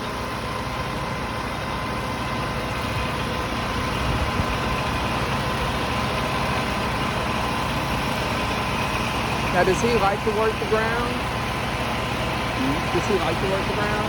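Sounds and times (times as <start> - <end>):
heavy equipment engine idling: 0.0 - 14.0
thin steady whine: 9.3 - 14.0.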